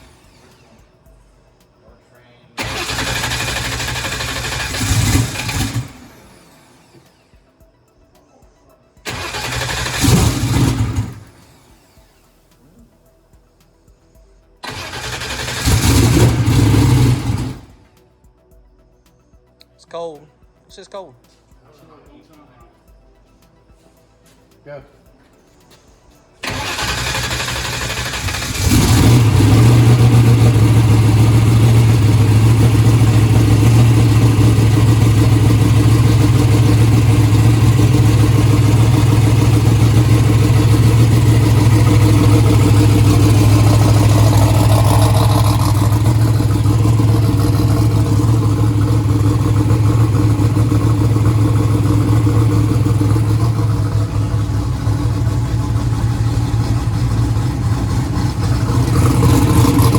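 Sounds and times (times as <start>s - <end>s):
engine cranking on starter: 0.0s - 1.2s, 2.6s - 7.6s, 9.0s - 12.6s, 14.6s - 18.0s, 26.4s - 59.9s
loud engine idling: 2.6s - 7.3s, 9.0s - 12.2s, 14.6s - 17.8s, 26.4s - 59.9s.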